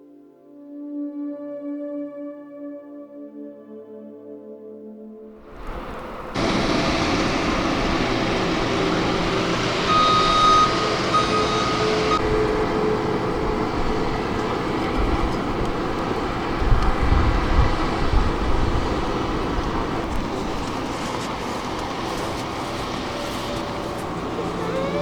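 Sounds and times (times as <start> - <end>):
low rumbles: 5.4 - 25.0
traffic noise: 5.4 - 25.0.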